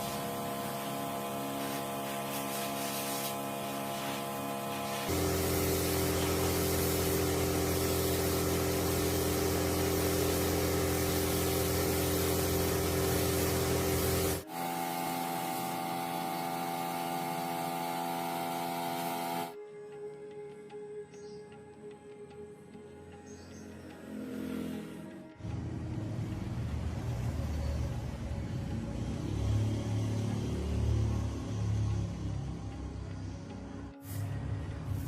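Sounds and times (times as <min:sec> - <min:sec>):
hissing air spray: 0:00.0 - 0:19.6, 0:34.0 - 0:35.0
steady machine hum: 0:00.0 - 0:19.6.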